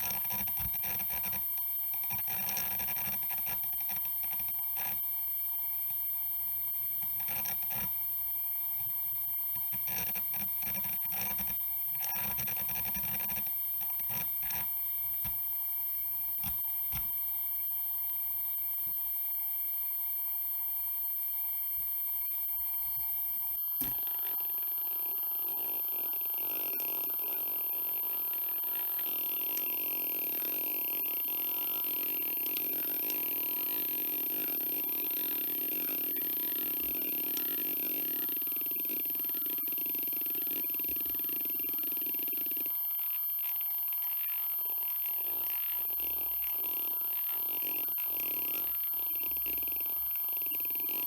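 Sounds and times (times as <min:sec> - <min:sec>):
hard drive seek clicks: 0:00.0 - 0:17.5, 0:40.3 - 0:51.0
hard drive seek buzzing: 0:00.0 - 0:51.0.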